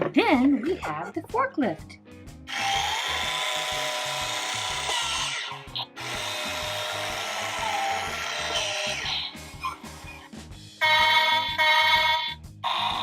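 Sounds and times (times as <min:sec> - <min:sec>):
background music: 0:00.0 - 0:13.0
toy forklift whirring: 0:02.5 - 0:10.2, 0:10.8 - 0:13.0.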